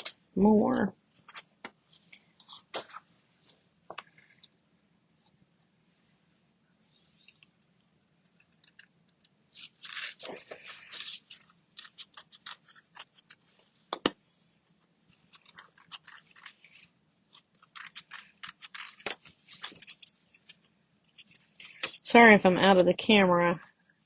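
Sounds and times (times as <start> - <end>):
paper crinkling: 8.3 - 13.9, 14.8 - 22.5
scissors snipping paper: 8.6 - 13.4, 15.2 - 22.0.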